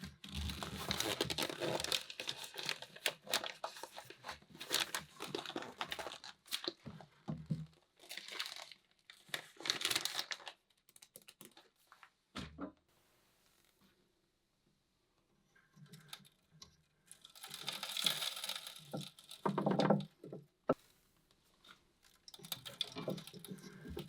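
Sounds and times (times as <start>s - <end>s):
soil crackling and rustling: 17.1s - 19.9s.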